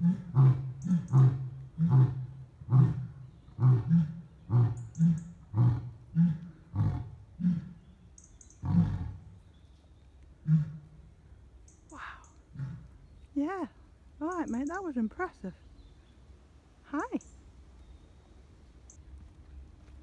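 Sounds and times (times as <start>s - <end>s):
lion roaring: 0.0s - 7.8s, 8.6s - 9.3s, 10.4s - 11.0s.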